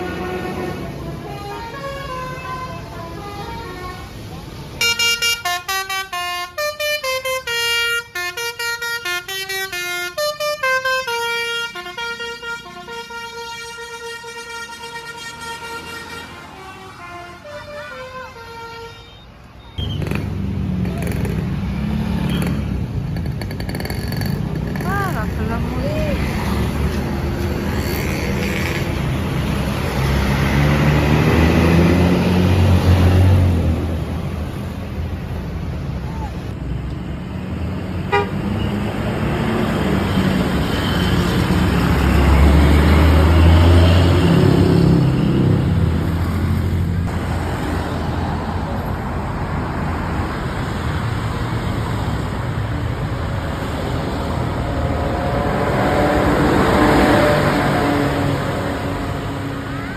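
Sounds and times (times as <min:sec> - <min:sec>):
bus diesel engine passing: 0:00.0 - 0:59.9
musical air horn tune: 0:38.1 - 0:38.4.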